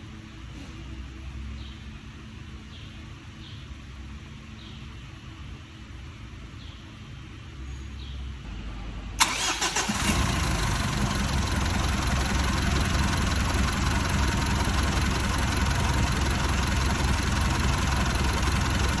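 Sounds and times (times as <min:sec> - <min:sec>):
diesel engine starting and idling: 0:09.2 - 0:19.0.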